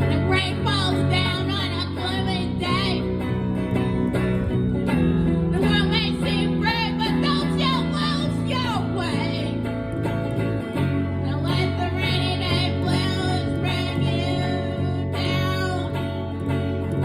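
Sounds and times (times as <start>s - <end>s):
strummed acoustic guitar: 0.0s - 17.0s
person singing with vibrato: 5.5s - 9.7s, 11.2s - 16.4s.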